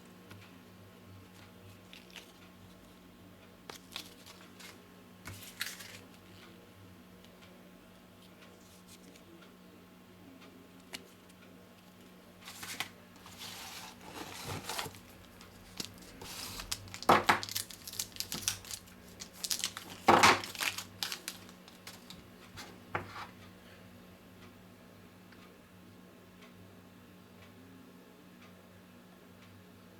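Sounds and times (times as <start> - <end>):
plastic packaging crinkling: 12.5 - 22.2.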